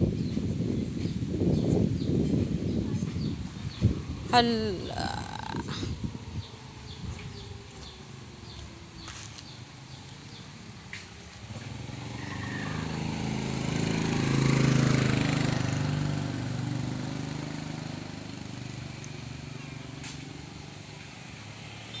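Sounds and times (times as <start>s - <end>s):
vehicle passing: 11.4s - 18.0s.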